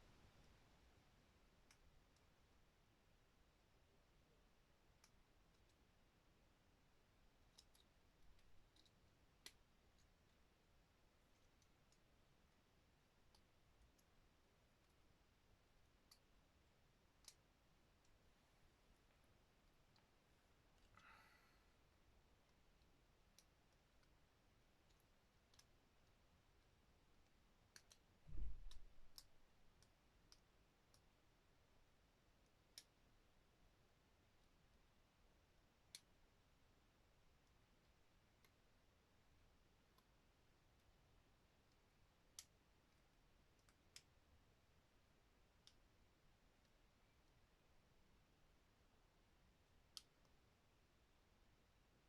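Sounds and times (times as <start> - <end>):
small plastic clicks: 7.4 - 10.5, 15.9 - 16.3, 17.1 - 18.2, 22.4 - 31.2, 32.4 - 33.0, 49.8 - 50.4.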